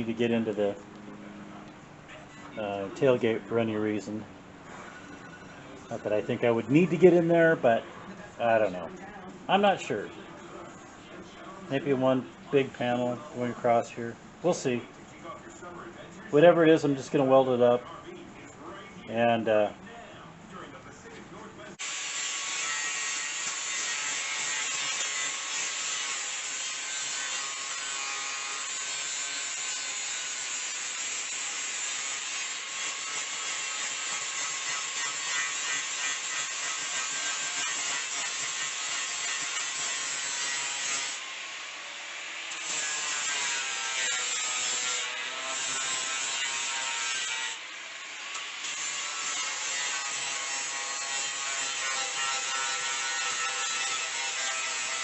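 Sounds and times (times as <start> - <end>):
power grinder grinding steel: 21.8 - 55.0.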